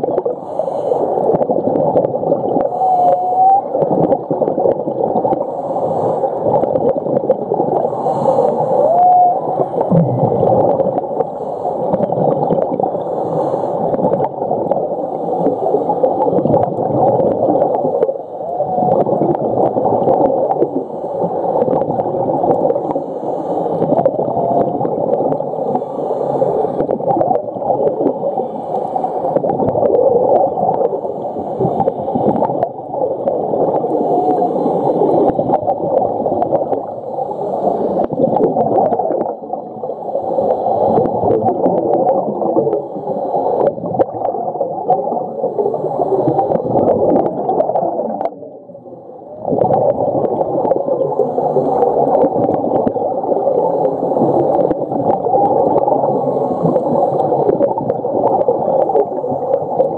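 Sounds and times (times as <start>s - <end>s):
muffled underwater rushing and bubbling: 0.0s - 59.9s.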